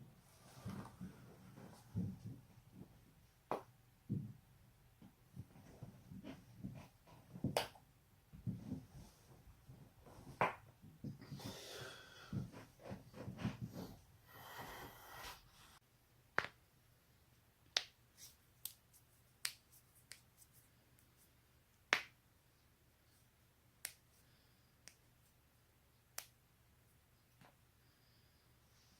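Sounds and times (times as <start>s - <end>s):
soft rustling movement: 0.0s - 3.4s.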